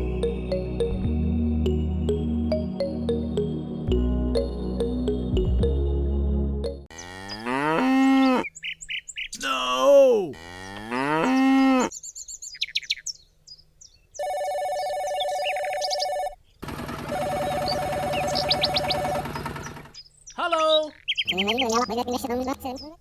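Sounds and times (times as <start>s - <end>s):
cattle mooing: 6.9s - 8.5s, 10.3s - 11.9s
bird chirps: 8.4s - 9.4s, 11.8s - 16.6s, 17.2s - 23.0s
electronic ringing tone: 14.2s - 16.4s, 17.1s - 19.4s.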